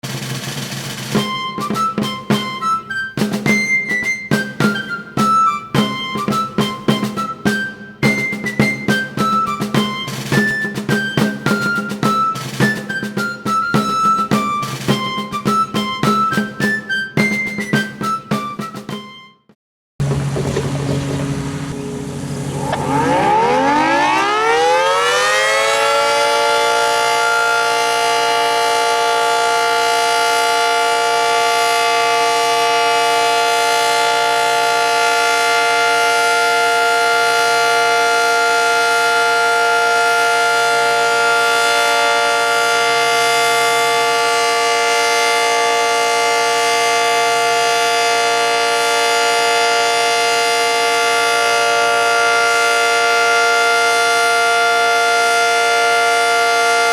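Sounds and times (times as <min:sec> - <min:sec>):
warning siren winding up: 0:20.9 - 0:56.9.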